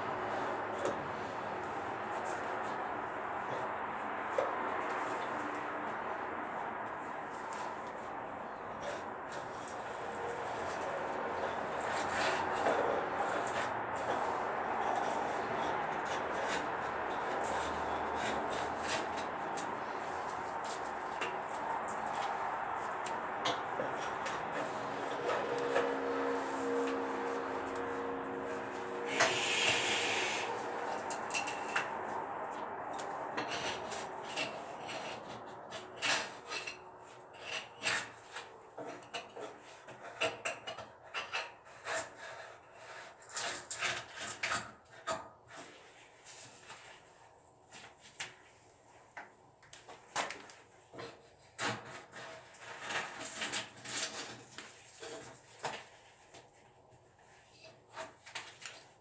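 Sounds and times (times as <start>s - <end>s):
scraping and rubbing by hand: 8.8s - 38.2s
steady hiss: 29.1s - 30.6s.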